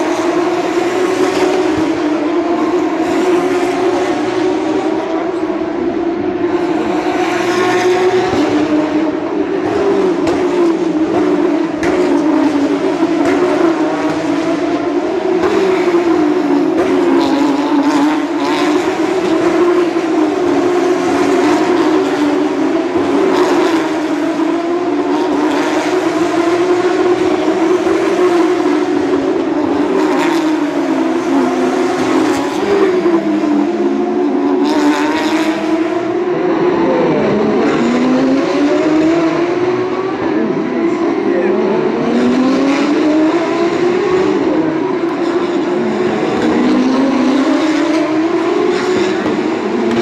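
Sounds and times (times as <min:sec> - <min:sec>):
race car engines: 0:00.0 - 0:50.0.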